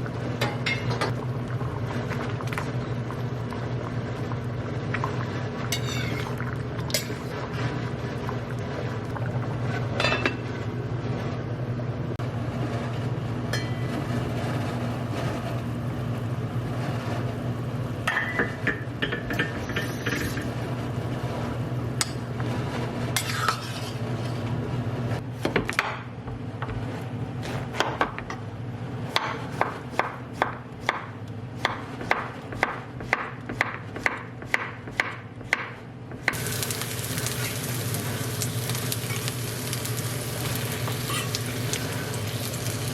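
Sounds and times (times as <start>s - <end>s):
utensils clinking against dishes: 0.4s - 1.1s, 5.8s - 7.3s, 10.0s - 10.5s, 18.1s - 20.5s, 23.2s - 24.0s
food sizzling in a frying pan: 5.6s - 7.5s, 36.3s - 42.9s.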